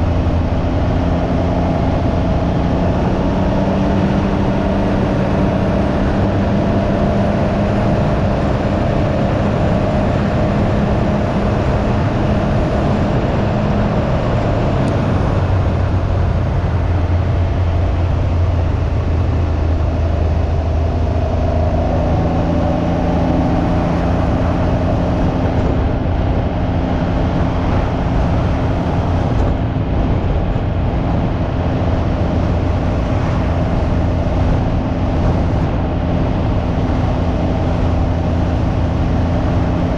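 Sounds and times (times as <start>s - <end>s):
motorcycle engine running: 0.0s - 39.9s
wind rushing over microphone: 0.0s - 39.9s.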